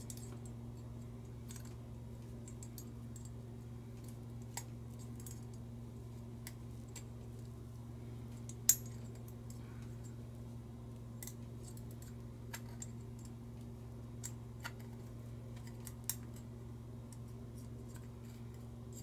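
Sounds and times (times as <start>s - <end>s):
low electrical hum: 0.0s - 19.0s.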